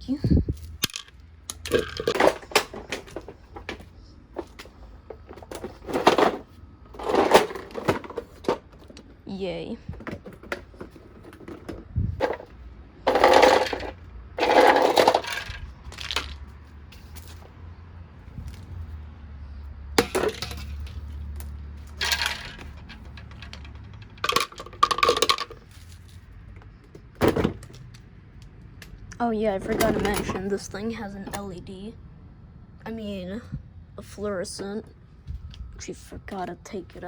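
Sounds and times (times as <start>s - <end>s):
plastic parts clattering and scraping: 0.6s - 9.2s, 9.9s - 17.4s, 20.0s - 28.1s, 29.6s - 30.6s.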